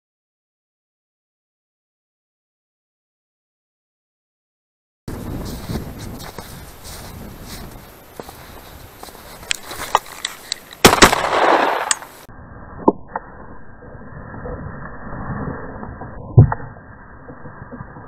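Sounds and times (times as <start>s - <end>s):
shotgun shots: 10.8s - 12.1s.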